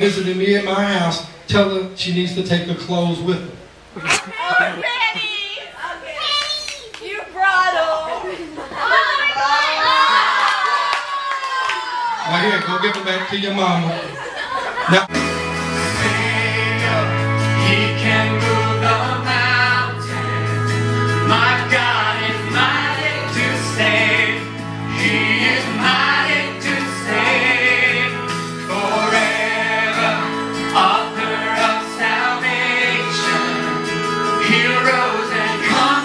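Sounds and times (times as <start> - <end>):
choir singing gospel: 14.2 - 36.0.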